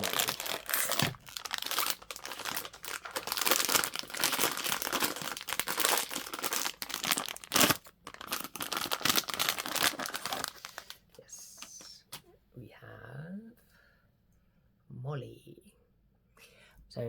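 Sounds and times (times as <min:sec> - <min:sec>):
plastic wrapping crinkling: 0:00.0 - 0:11.1.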